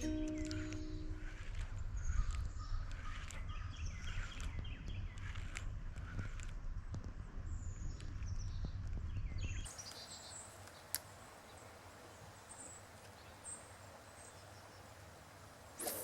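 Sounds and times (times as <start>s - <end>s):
wind rumble on microphone: 1.1s - 9.7s
steady hiss: 9.7s - 16.0s.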